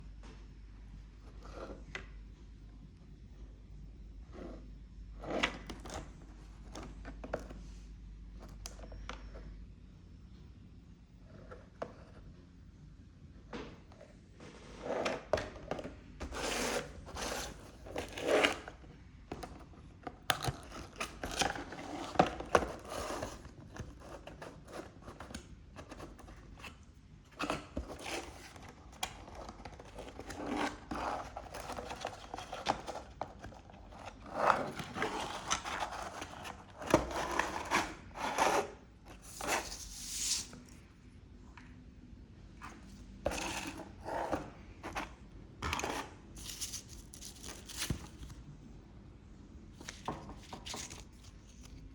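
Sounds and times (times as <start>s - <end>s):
packaging rustling and scraping: 16.2s - 19.6s, 20.4s - 40.7s, 42.7s - 48.4s, 49.8s - 51.9s.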